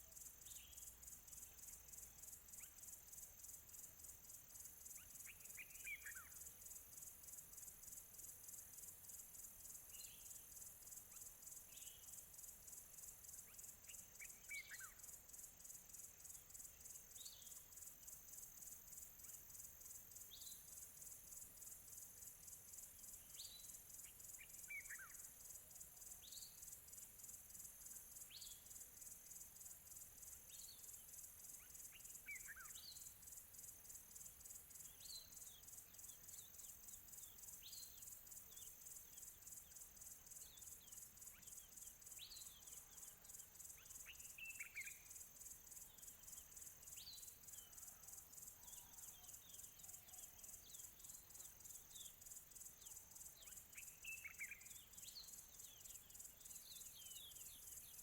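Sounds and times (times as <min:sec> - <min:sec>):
high pulsing insect chorus: 0:00.0 - 0:58.0
faint birds chirping: 0:34.1 - 0:58.0.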